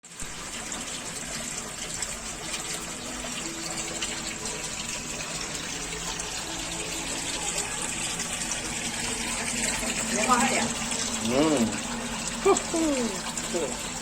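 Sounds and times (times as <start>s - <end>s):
water rushing through filter: 0.0s - 14.0s.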